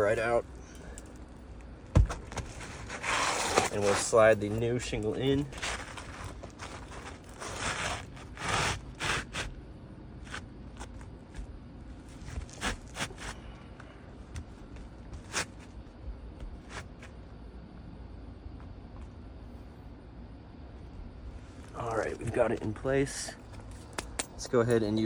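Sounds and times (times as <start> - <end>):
shingle scraping against shingles: 2.0 - 4.6, 5.4 - 9.6.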